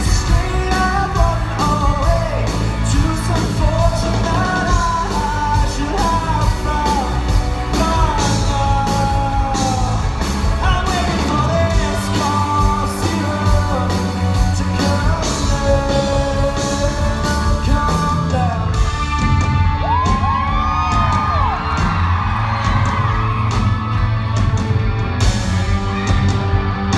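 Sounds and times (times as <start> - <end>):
man singing: 0.0 - 19.4
live rock band playing: 0.0 - 26.9
steady drum beat: 0.0 - 26.9.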